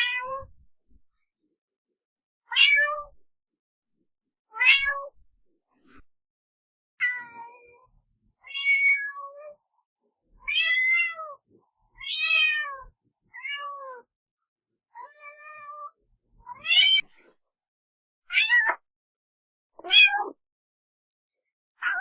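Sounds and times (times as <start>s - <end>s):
cat meowing: 0.0s - 0.5s, 2.5s - 3.1s, 4.6s - 5.2s, 7.0s - 7.8s, 8.4s - 9.6s, 10.4s - 11.4s, 12.0s - 14.1s, 15.0s - 15.9s, 16.5s - 17.1s, 18.3s - 18.8s, 19.8s - 20.4s, 21.8s - 22.0s.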